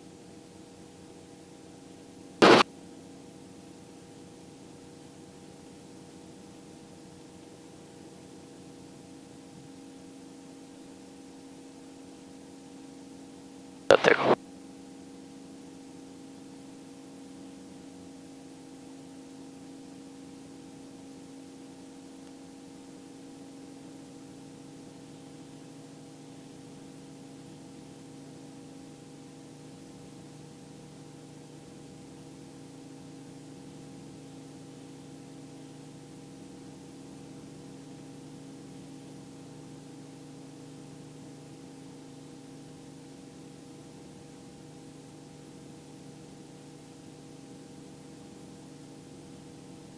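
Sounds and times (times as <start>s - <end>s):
light hiss: 2.4s - 2.6s, 13.9s - 14.4s.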